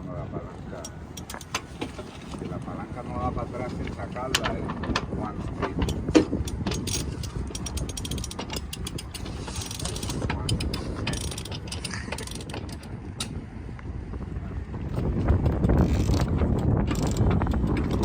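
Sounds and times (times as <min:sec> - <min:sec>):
winch clicking: 0:00.8 - 0:02.6, 0:03.7 - 0:13.4, 0:15.2 - 0:18.0.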